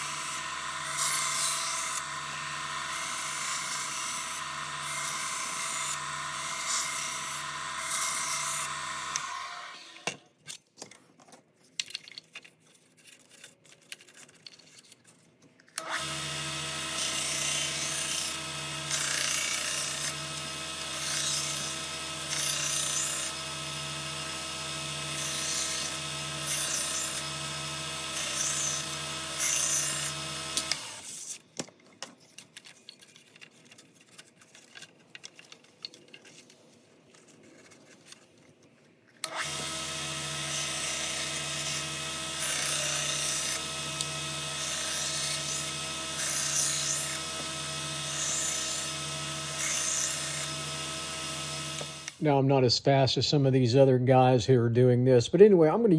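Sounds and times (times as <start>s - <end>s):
knife grinding on abrasive belt: 0.0s - 9.8s, 15.8s - 31.5s, 39.2s - 52.2s
belt grinder motor hum: 0.0s - 10.1s, 15.8s - 31.4s, 39.2s - 52.2s.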